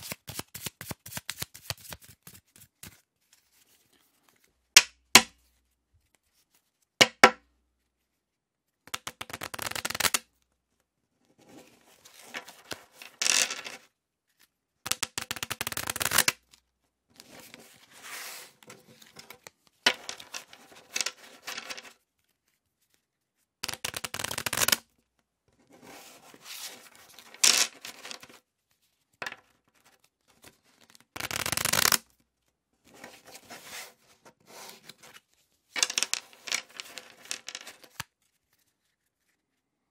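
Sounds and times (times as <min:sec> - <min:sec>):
playing cards shuffling: 0:00.0 - 0:04.5, 0:09.0 - 0:10.2, 0:11.6 - 0:16.4, 0:17.2 - 0:23.0, 0:23.6 - 0:24.8, 0:25.8 - 0:28.4, 0:29.7 - 0:32.0, 0:32.9 - 0:39.6.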